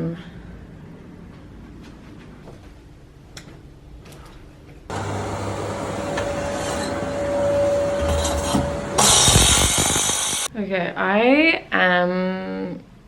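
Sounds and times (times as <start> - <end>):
power tool cutting wall: 4.9 - 10.5.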